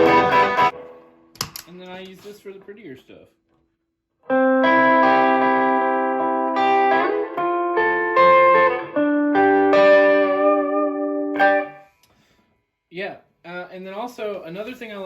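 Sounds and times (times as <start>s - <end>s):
electric guitar chords and notes: 0.0s - 1.4s, 4.3s - 11.9s.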